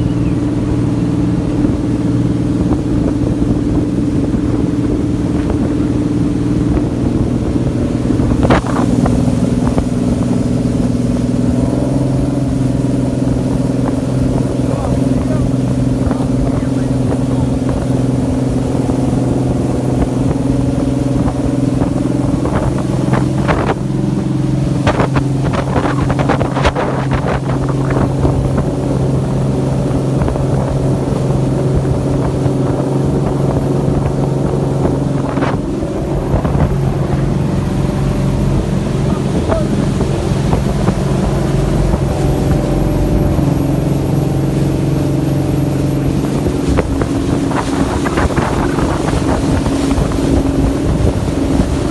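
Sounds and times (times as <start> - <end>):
motor engine running: 0.0 - 51.9.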